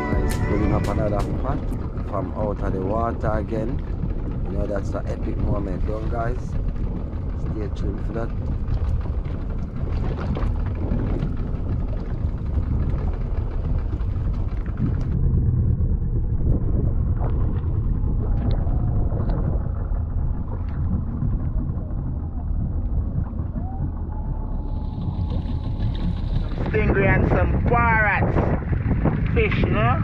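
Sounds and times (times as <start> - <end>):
wind buffeting microphone: 0.0 - 30.0.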